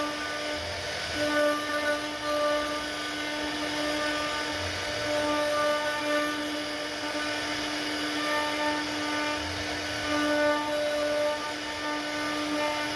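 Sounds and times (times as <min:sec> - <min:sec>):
spindle motor whine: 0:00.0 - 0:12.9.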